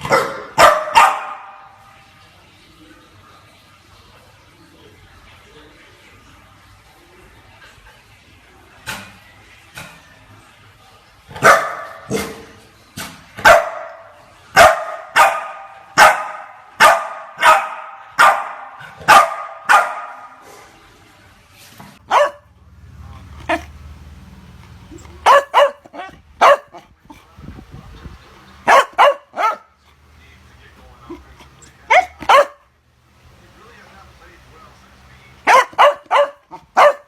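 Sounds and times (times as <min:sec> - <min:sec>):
dog barking: 0:00.0 - 0:01.8, 0:11.4 - 0:12.4, 0:13.4 - 0:20.4, 0:22.0 - 0:22.5, 0:23.4 - 0:23.7, 0:25.0 - 0:26.8, 0:28.6 - 0:29.8, 0:31.9 - 0:32.7, 0:35.4 - 0:37.0.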